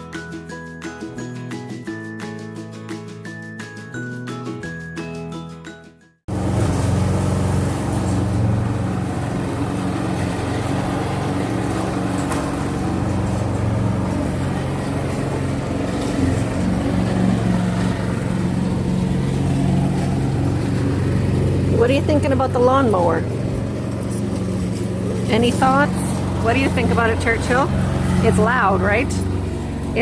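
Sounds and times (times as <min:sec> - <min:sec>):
lawnmower engine running: 0:06.3 - 0:30.0.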